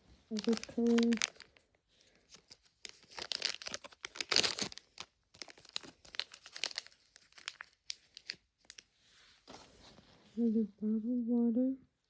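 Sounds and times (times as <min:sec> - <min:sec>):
plastic wrapper crinkling and tearing: 0:00.3 - 0:08.9.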